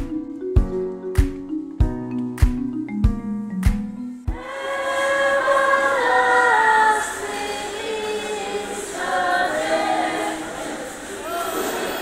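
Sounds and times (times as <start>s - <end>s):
choir singing a hymn: 4.3s - 12.0s.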